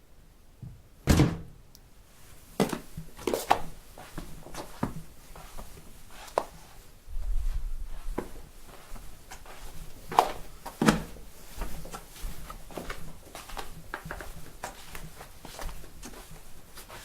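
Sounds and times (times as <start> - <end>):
heavy thud: 1.0 - 1.6
soft footsteps in slippers: 2.1 - 17.0.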